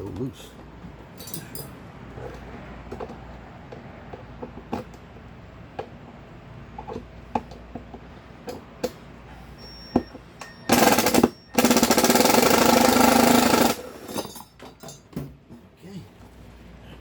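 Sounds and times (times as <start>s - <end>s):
impact driver hammering: 10.7s - 14.3s.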